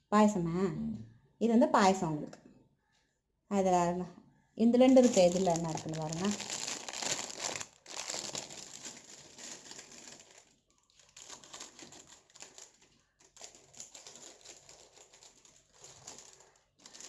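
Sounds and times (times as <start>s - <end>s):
food packaging crinkling: 4.9s - 17.0s.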